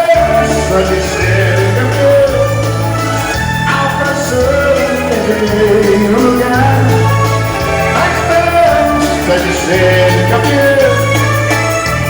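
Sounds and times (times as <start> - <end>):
live band playing a waltz: 0.0 - 12.0
person singing: 0.0 - 12.0.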